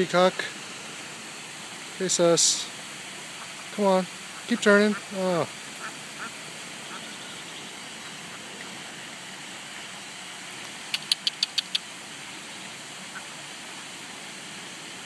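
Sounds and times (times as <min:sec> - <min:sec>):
outdoor background noise: 0:00.0 - 0:15.0
sharp clicks: 0:10.9 - 0:11.8.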